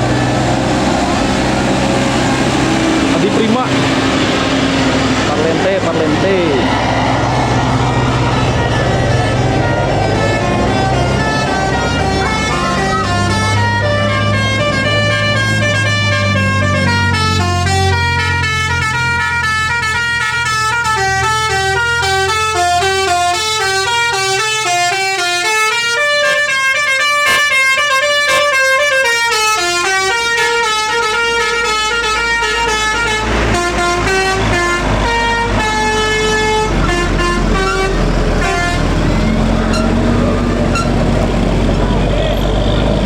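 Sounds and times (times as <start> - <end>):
bus engine running: 0.0 - 43.0
musical air horn tune: 8.5 - 39.0.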